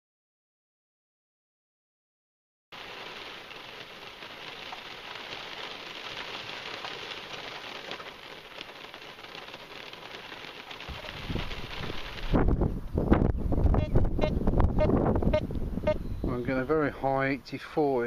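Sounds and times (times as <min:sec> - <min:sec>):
rain hissing: 0:02.8 - 0:16.0
wind buffeting microphone: 0:10.9 - 0:17.0.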